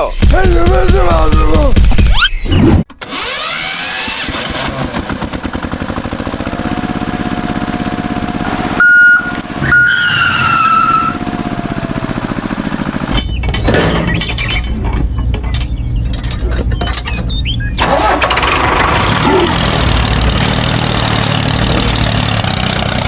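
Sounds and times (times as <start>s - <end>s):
engine running with rapid pulsing: 3.0s - 13.4s, 17.8s - 23.0s
short loud beep: 8.8s - 10.0s
falling whistle-like tone: 8.8s - 11.2s.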